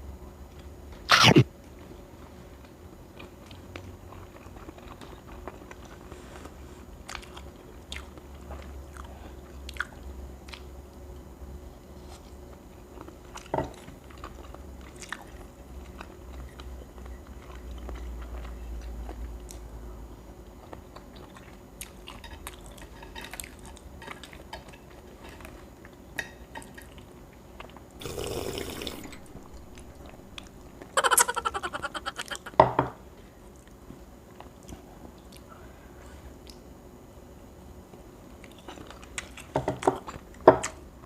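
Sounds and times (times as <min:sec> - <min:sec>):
soft chewing with mouth clicks: 0:01.8 - 0:26.0, 0:33.5 - 0:36.7, 0:37.9 - 0:40.8.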